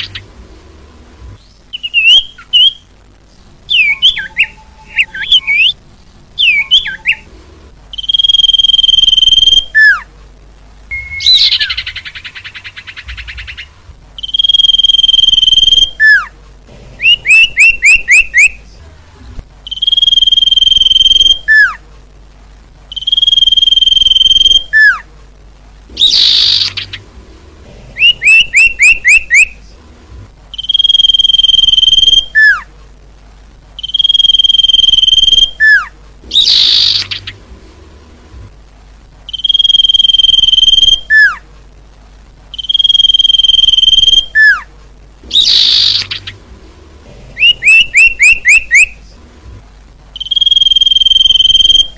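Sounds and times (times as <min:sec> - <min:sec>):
harsh raspy bird calls: 0:00.0 - 0:00.3, 0:10.9 - 0:16.3, 0:25.9 - 0:27.1, 0:28.0 - 0:29.5, 0:33.8 - 0:37.5, 0:45.3 - 0:46.4, 0:47.4 - 0:49.0
bird song whistles: 0:01.4 - 0:02.9, 0:03.7 - 0:05.8, 0:06.4 - 0:07.3, 0:07.9 - 0:10.1, 0:10.9 - 0:16.3, 0:17.0 - 0:18.6, 0:19.6 - 0:21.8, 0:22.9 - 0:25.0, 0:26.0 - 0:27.0, 0:28.0 - 0:29.6, 0:30.5 - 0:32.7, 0:33.8 - 0:37.4, 0:39.3 - 0:41.4, 0:42.5 - 0:44.7, 0:45.3 - 0:46.3, 0:47.4 - 0:49.0, 0:50.2 - 0:51.9.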